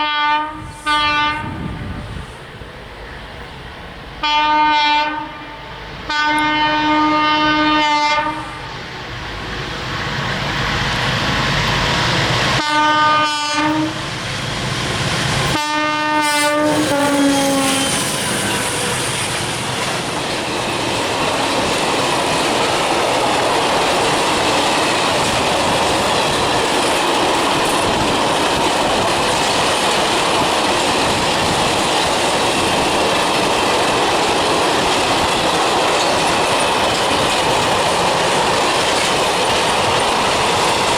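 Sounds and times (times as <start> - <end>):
train horn blasts: 0.0 - 2.0, 4.2 - 8.6, 12.6 - 14.1, 15.5 - 19.3
train running on rails: 0.0 - 40.9.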